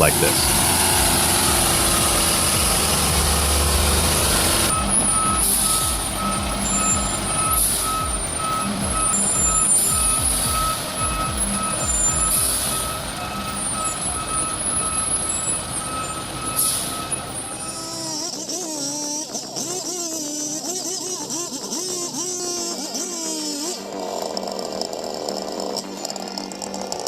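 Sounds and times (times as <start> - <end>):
reversing alarm beeping: 0.0 - 18.2
truck engine rumble: 0.0 - 18.5
air hiss bursts: 0.0 - 19.4.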